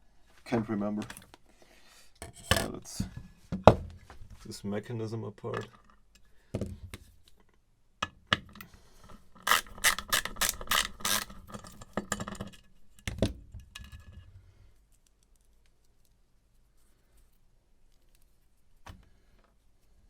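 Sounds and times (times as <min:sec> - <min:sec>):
small metal parts clicking: 0:09.4 - 0:12.4.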